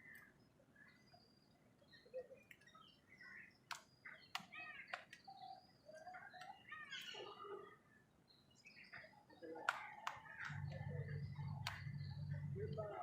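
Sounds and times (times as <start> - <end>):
birds chirping: 0.0 - 13.0
sharp clicks: 3.6 - 5.2, 9.6 - 12.8.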